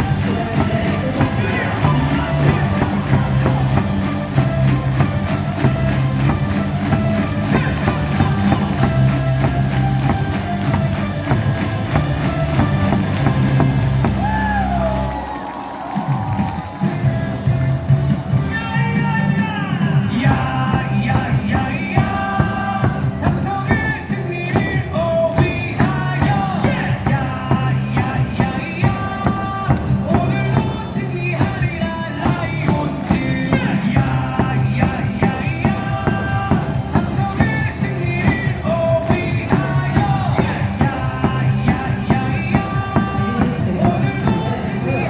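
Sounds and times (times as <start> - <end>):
crowd singing and shouting: 0.0 - 45.0
upbeat music over loudspeakers: 0.0 - 45.0.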